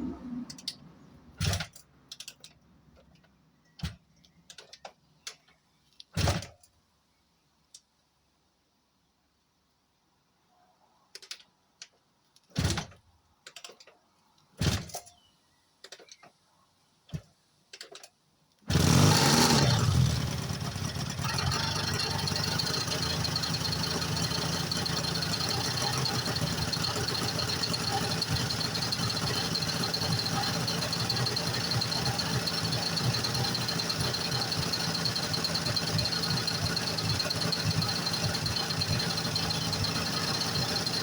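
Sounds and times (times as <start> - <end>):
motorcycle engine starting and idling: 0.0 - 6.7, 17.1 - 41.0
engine knocks and clicks: 17.1 - 41.0.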